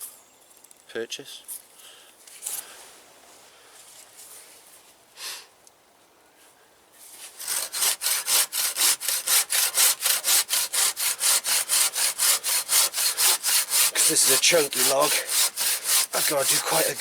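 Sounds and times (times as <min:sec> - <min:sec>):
hand saw cutting a log: 0:07.3 - 0:17.0.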